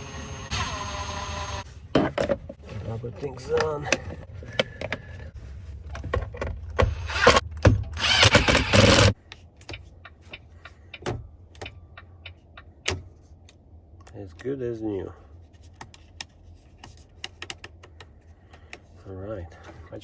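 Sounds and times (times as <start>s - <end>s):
power drill running: 0.0s - 1.6s, 7.0s - 7.4s, 8.0s - 9.2s.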